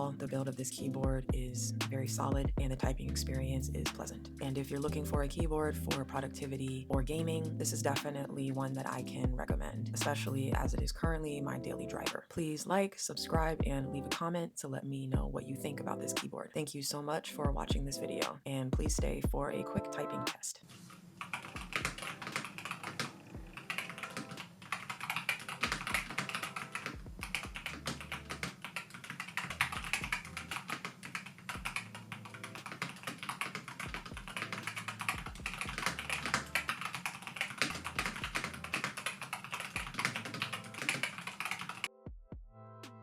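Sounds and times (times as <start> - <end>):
fast keyboard typing: 21.2 - 41.9.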